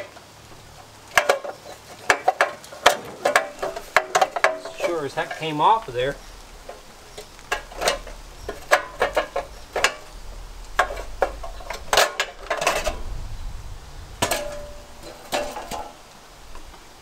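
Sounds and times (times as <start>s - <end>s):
metal tools clinking and clanking: 1.1s - 10.1s.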